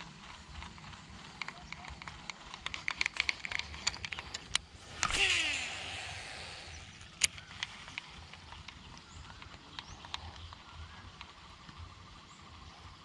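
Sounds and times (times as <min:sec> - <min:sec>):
fishing reel spool whirring: 0:00.0 - 0:13.0
sharp click: 0:01.4 - 0:08.8.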